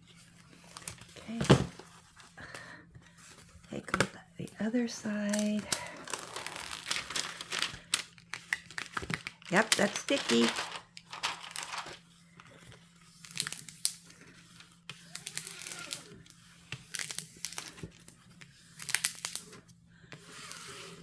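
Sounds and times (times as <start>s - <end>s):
plastic film crinkling: 5.1s - 12.1s.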